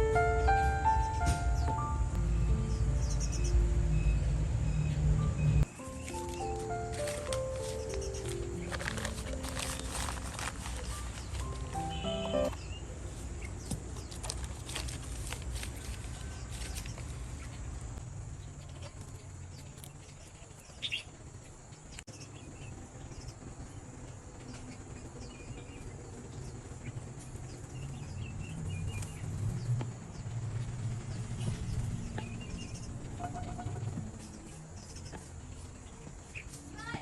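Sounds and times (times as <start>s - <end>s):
low steady rumble: 0.0s - 5.8s
bird chirps: 0.0s - 13.6s.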